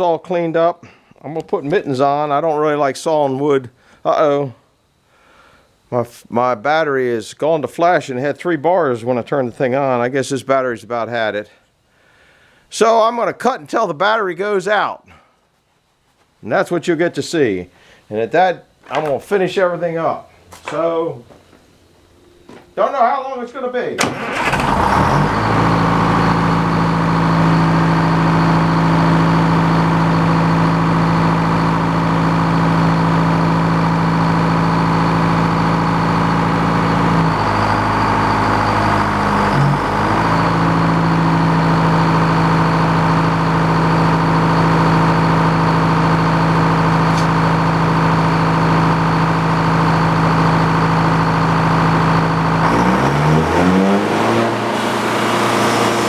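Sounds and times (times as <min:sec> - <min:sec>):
sawmill engine running: 0:24.0 - 0:56.0.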